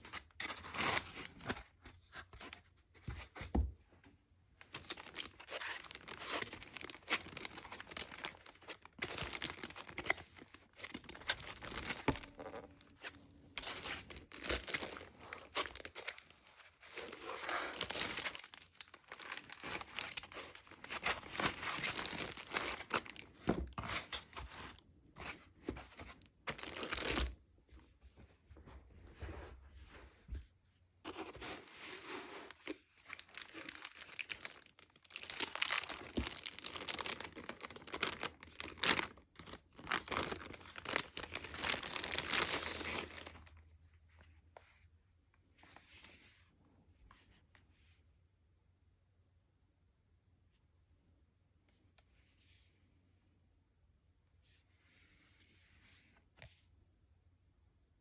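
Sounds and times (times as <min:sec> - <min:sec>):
packaging crinkling and tearing: 0:04.6 - 0:24.8, 0:26.2 - 0:27.4, 0:32.4 - 0:43.6.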